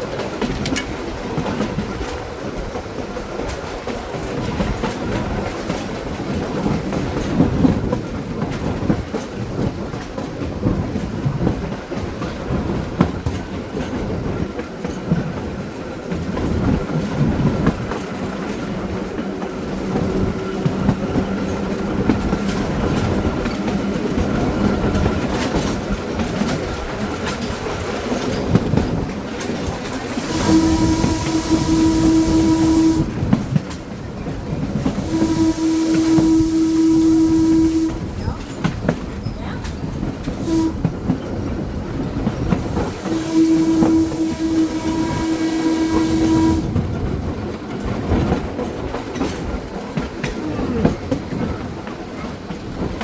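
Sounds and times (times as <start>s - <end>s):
wheels clicking over rails: 0.0s - 37.1s
trolley car rolling rumble: 0.0s - 53.0s.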